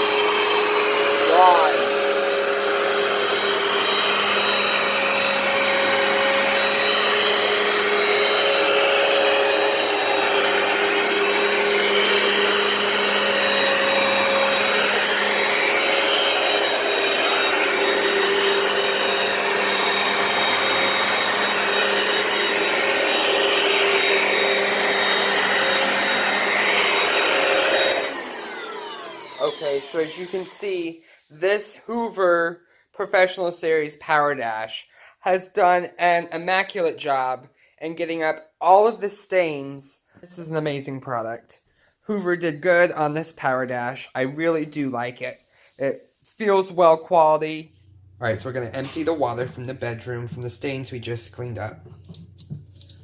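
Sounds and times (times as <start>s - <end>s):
carpet cleaner motor droning: 0.0s - 30.7s.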